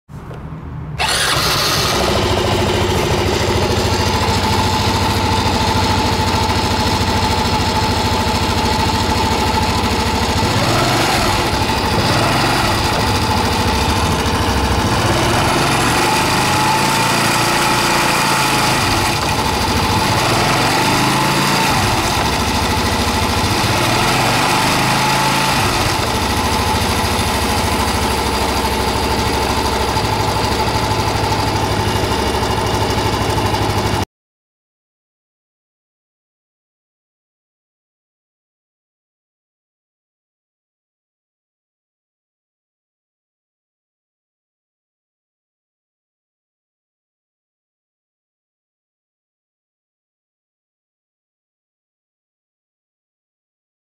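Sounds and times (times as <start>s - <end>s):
motorcycle engine idling: 1.0s - 15.7s, 18.8s - 24.4s, 25.1s - 34.0s
fine engine rattling: 1.0s - 34.0s.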